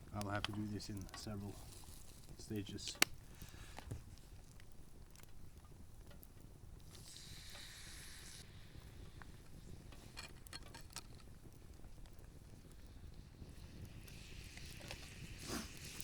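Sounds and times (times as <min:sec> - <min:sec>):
potatoes sizzling in a pan: 0:00.0 - 0:16.0
light clicks: 0:00.1 - 0:06.5.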